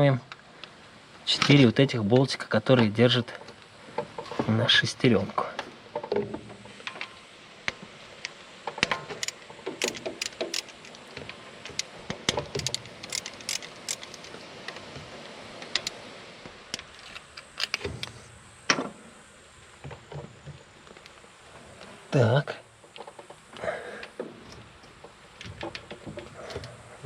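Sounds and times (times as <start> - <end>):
wrench clicking on bolts: 8.8 - 11.0, 11.7 - 14.4.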